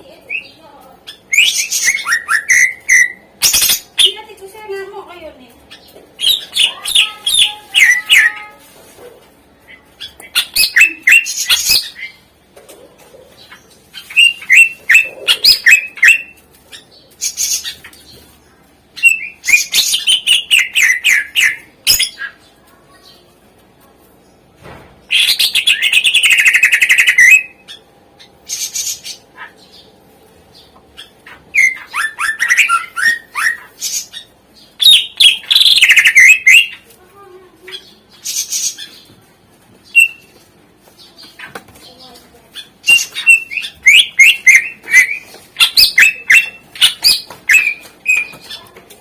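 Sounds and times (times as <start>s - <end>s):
bird singing with trills: 0.3s - 4.2s, 5.7s - 8.6s, 14.0s - 18.1s, 19.0s - 22.4s, 25.1s - 29.9s, 30.5s - 36.8s, 39.8s - 40.4s, 42.6s - 48.7s.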